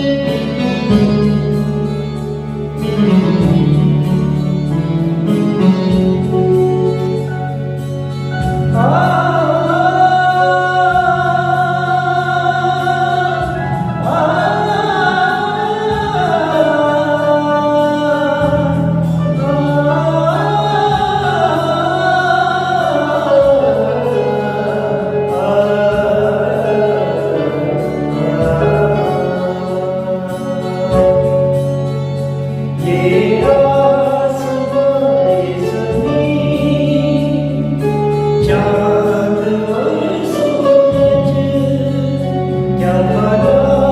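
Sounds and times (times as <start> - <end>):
instrumental backing: 0.0 - 43.9
voices singing: 8.7 - 31.2.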